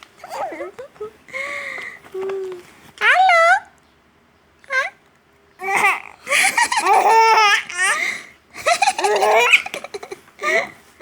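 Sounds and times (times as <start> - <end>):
young child laughing: 5.8 - 8.0, 8.6 - 10.8.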